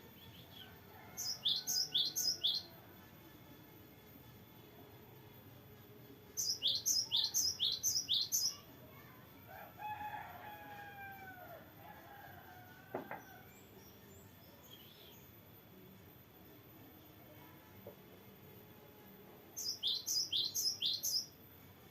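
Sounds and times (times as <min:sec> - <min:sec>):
rooster crowing: 0:00.6 - 0:02.7, 0:09.5 - 0:13.4.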